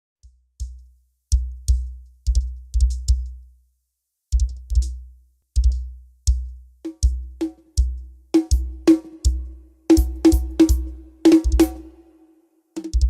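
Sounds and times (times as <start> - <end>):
drum machine kicks with clicks: 0.6 - 3.3, 4.4 - 5.0, 5.6 - 7.2, 9.3 - 11.8.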